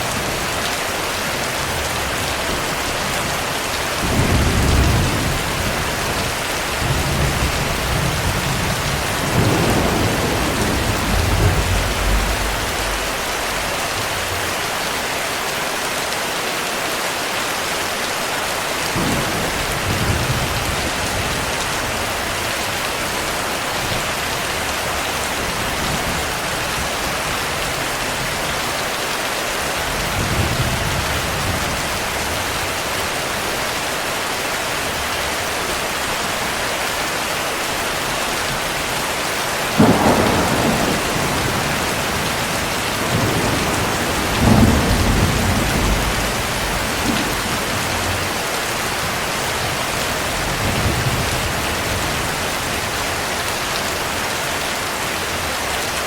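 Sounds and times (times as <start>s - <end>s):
heavy rain: 0.0s - 56.0s
distant thunder rumbling: 6.6s - 14.3s, 39.7s - 52.3s.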